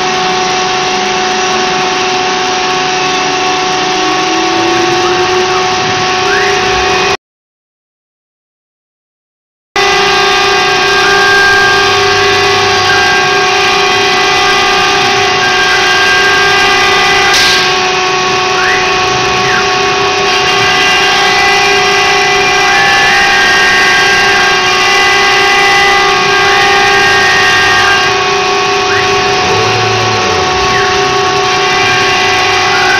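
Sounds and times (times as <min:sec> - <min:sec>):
motor whines rising and falling: 0:00.0 - 0:07.2, 0:10.9 - 0:21.3, 0:26.9 - 0:32.9
router machine whine: 0:00.0 - 0:07.2, 0:09.8 - 0:32.9.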